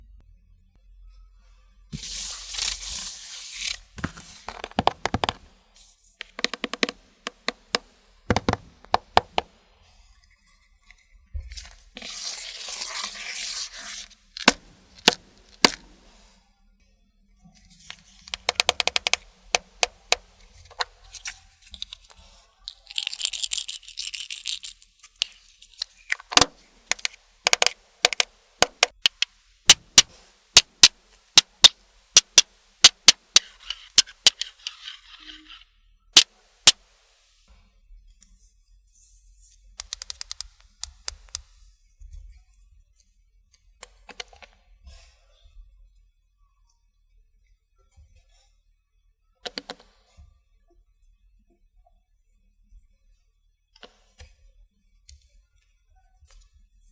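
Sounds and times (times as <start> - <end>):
sticky crackling: 22.7 - 35.6, 39.8 - 41.5
slime pops and clicks: 39.8 - 41.4.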